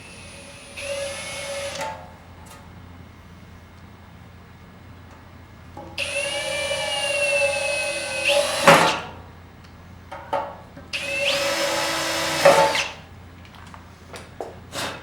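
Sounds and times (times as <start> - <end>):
power drill whining: 0.0 - 1.9, 6.0 - 9.1, 11.0 - 13.0.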